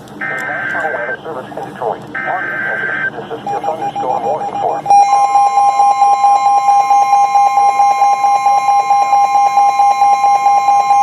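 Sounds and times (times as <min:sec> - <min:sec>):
two-tone alert tone: 0:03.5 - 0:11.0.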